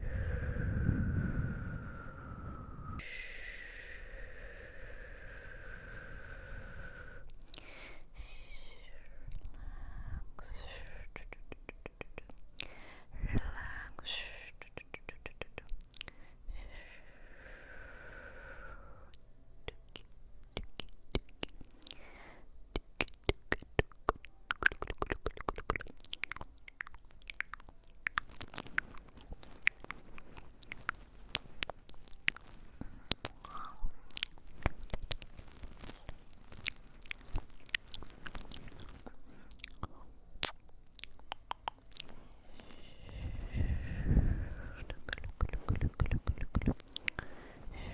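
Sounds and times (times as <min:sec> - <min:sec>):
crisp clicks and crackles: 0:23.0 - 0:42.7, 0:44.8 - 0:47.3.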